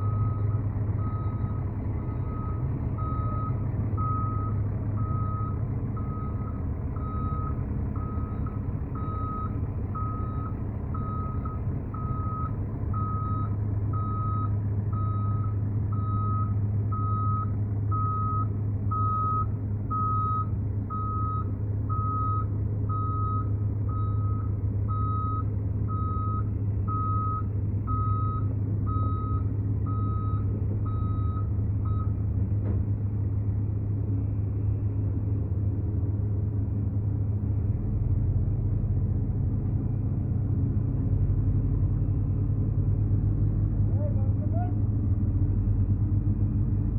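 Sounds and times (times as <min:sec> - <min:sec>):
reversing alarm beeping: 0:00.0 - 0:32.2
diesel engine running: 0:00.0 - 0:46.9.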